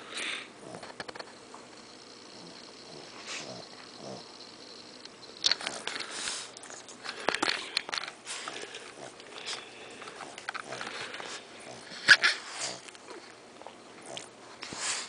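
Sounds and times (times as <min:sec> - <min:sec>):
dog snoring through its nose: 0:00.2 - 0:13.0, 0:13.6 - 0:15.0.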